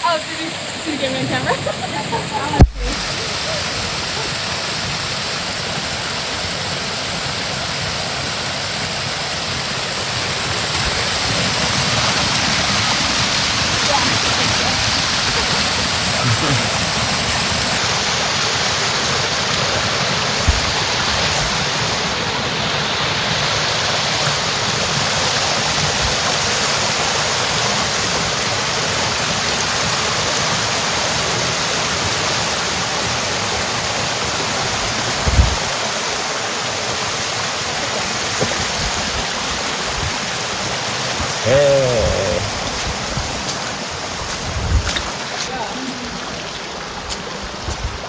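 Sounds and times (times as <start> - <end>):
rushing water: 0.0 - 48.0
low thumps: 2.6 - 3.1.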